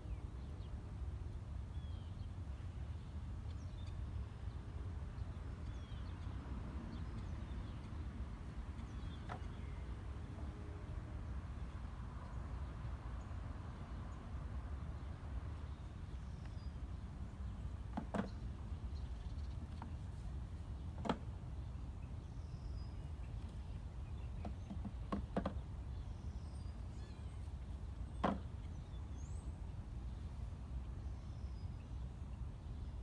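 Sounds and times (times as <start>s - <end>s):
beehive equipment clicking and knocking: 17.9s - 18.4s, 21.0s - 21.3s, 24.4s - 25.6s, 28.2s - 28.5s.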